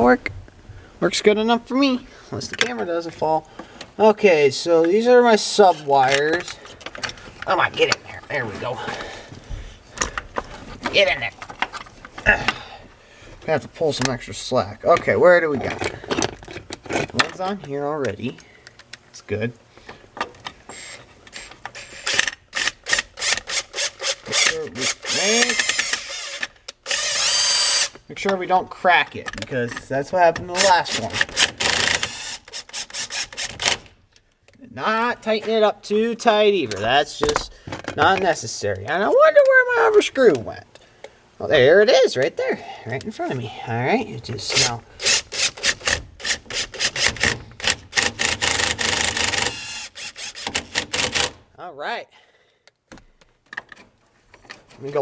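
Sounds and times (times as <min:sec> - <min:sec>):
scraping and clicking of parts: 0:04.8 - 0:12.6, 0:14.9 - 0:28.4, 0:44.4 - 0:51.4, 0:52.7 - 0:55.0
power driver driving screw: 0:20.7 - 0:28.0, 0:30.5 - 0:33.9, 0:44.5 - 0:51.4.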